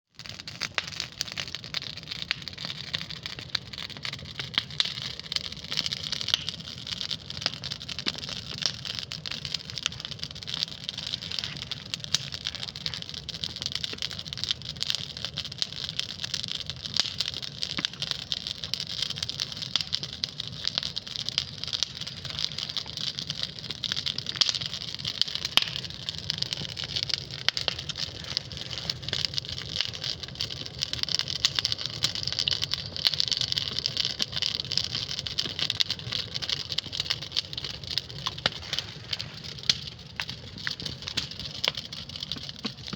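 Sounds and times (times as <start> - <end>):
campfire crackling: 0.1 - 42.9.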